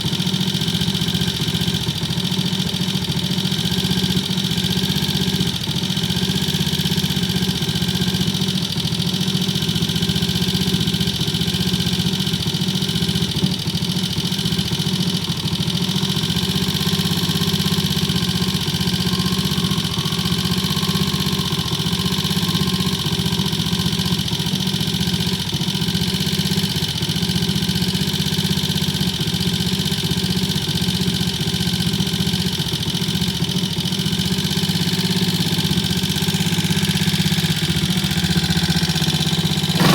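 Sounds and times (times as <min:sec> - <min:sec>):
single-cylinder engine running: 0:00.0 - 0:39.9.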